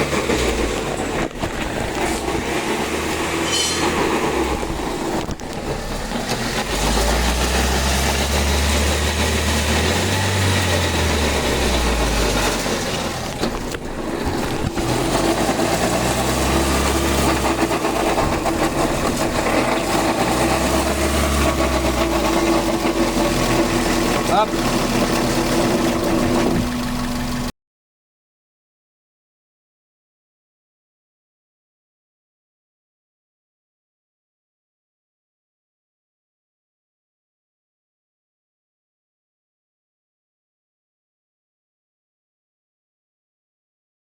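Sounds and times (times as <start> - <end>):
low engine rumble: 0.0 - 27.5.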